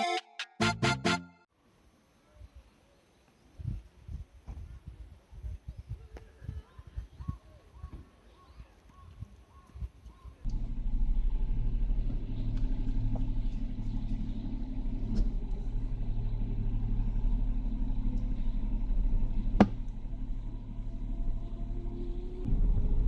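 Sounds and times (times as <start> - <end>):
car engine rumbling: 10.4 - 23.0.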